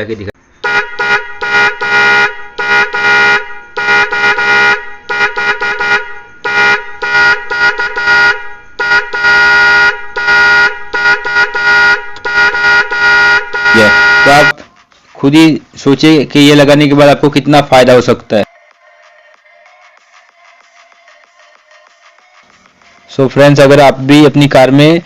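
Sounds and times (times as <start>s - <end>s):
electric car horn honking: 0.6s - 14.6s.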